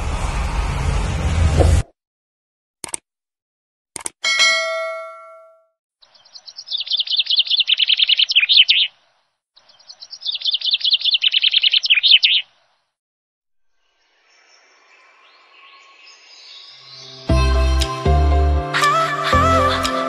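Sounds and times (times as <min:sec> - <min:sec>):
bell-like chime ringing: 0:04.2 - 0:05.7
bird song trilling: 0:06.0 - 0:09.0, 0:09.6 - 0:12.6.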